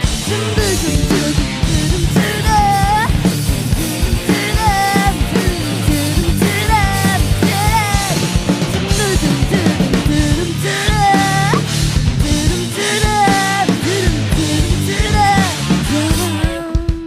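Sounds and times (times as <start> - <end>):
rock band playing: 0.0 - 17.0
singer holding notes: 1.8 - 3.2, 3.8 - 11.7, 12.3 - 16.8.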